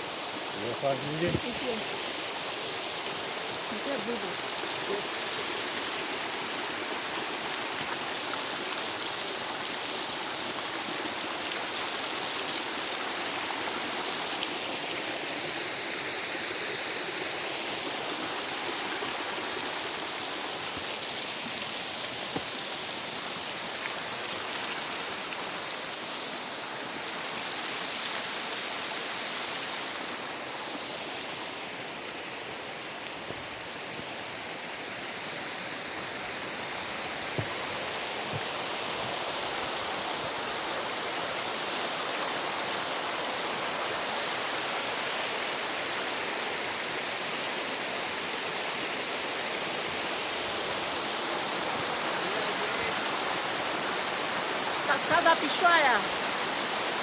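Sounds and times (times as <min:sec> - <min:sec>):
waterfall and stream rushing: 0:00.0 - 0:57.0.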